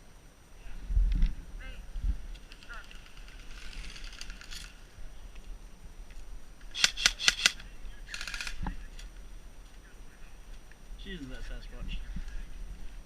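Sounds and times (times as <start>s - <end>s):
airsoft rifle shots: 6.7s - 8.6s.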